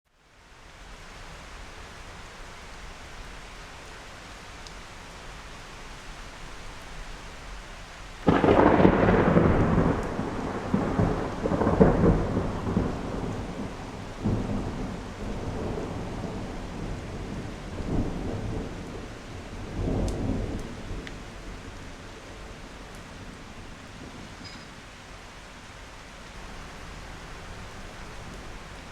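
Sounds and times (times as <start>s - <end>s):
steady rain: 0.1s - 28.9s
rolling thunder: 8.2s - 24.4s.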